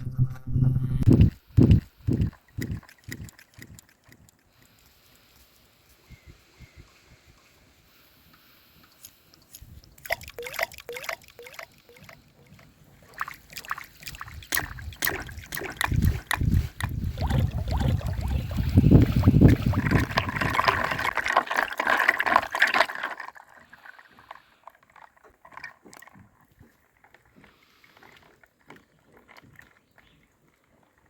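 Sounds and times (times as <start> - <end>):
water sloshing and gurgling: 1.0 - 4.7, 9.4 - 29.8
water dripping and plopping: 1.2 - 4.4, 9.9 - 22.0.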